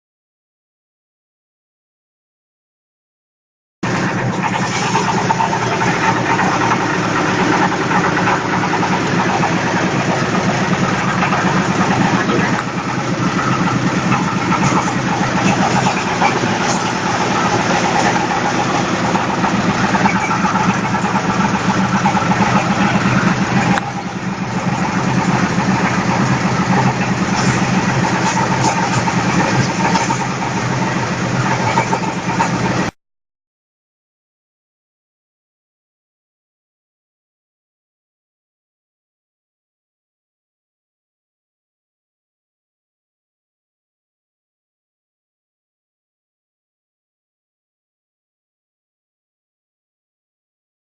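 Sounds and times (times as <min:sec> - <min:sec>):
diesel engine running: 0:03.8 - 0:33.0
grain mill whirring: 0:03.8 - 0:33.0.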